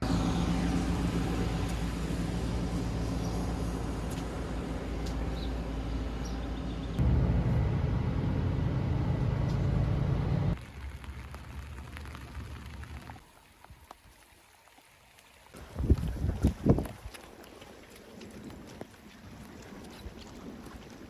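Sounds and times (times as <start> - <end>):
road vehicle rumbling: 0.0 - 13.2.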